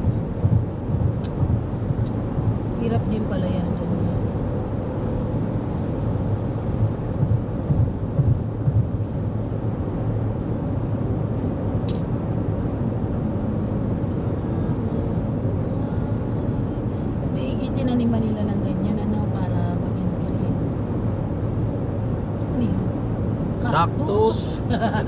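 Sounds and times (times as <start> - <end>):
low bumps: 0.0 - 3.8, 5.9 - 11.0
road and tyre noise in car cabin: 0.0 - 25.0.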